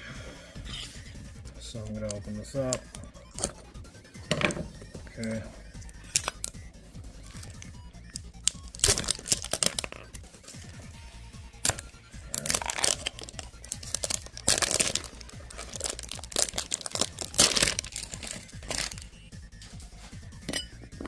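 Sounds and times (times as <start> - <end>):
background music: 0.0 - 21.0
plastic and foil crinkling: 4.5 - 6.6, 7.2 - 10.9, 11.6 - 20.2.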